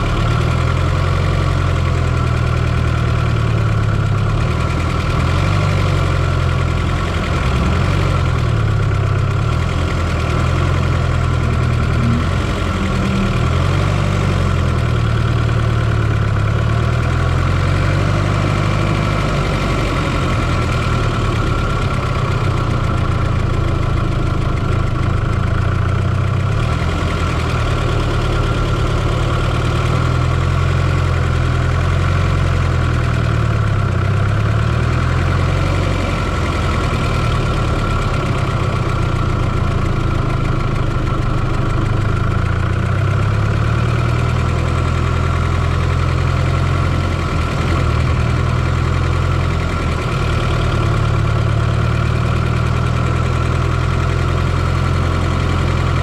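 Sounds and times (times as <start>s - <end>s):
car engine idling: 0.0s - 56.0s
steady high whine: 10.7s - 15.8s.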